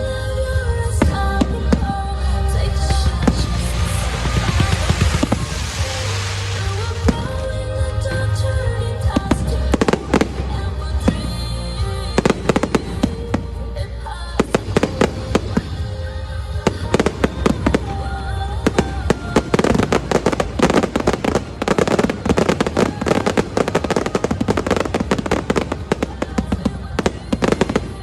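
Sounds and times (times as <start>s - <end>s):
music playing: 0.0s - 28.0s
fireworks bangs and crackles: 2.6s - 8.3s, 14.4s - 28.0s.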